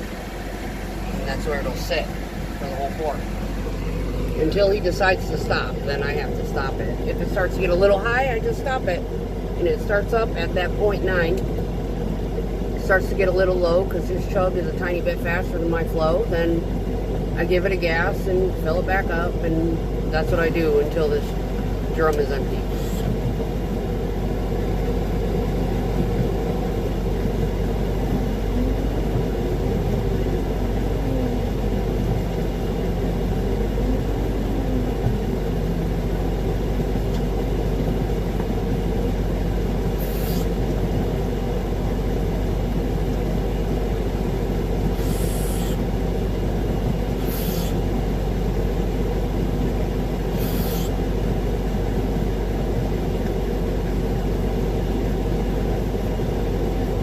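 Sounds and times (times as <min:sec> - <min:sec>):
diesel truck engine revving: 0:00.0 - 0:57.0
short hisses: 0:40.0 - 0:40.6, 0:45.0 - 0:45.8, 0:47.2 - 0:47.8, 0:50.3 - 0:51.0.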